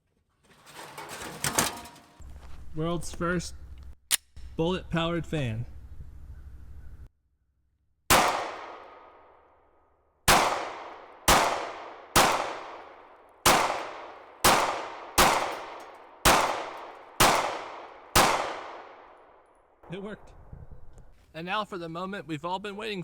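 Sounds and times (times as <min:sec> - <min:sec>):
gunshots ringing on metal: 0:08.1 - 0:09.2, 0:10.3 - 0:19.2.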